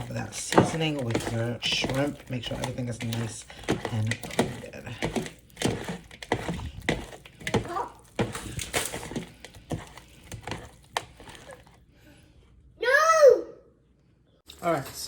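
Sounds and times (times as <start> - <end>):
shrimp squishing in a bowl: 0.0 - 11.9.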